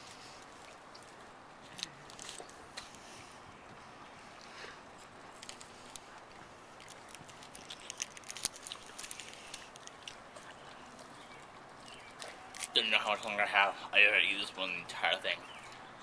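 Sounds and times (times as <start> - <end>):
eating clicks and crackles: 0.0 - 3.1, 4.4 - 13.3
steady low hiss: 0.0 - 16.0.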